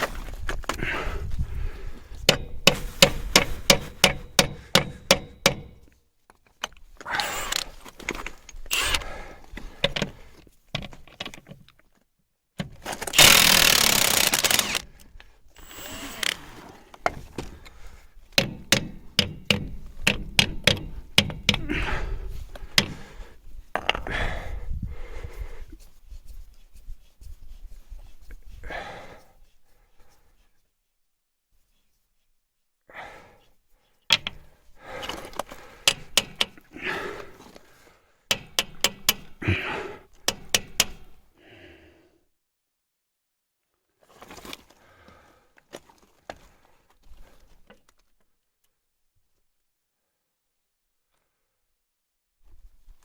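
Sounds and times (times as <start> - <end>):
impact wrench hammering: 2.3 - 5.9, 13.1 - 14.8, 18.4 - 21.7, 35.9 - 36.6, 38.3 - 39.4, 40.2 - 41.2.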